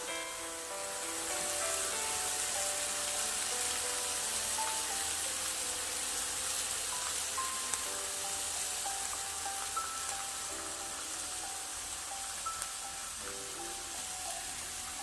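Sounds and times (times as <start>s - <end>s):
food frying in a pan: 0.0s - 15.0s.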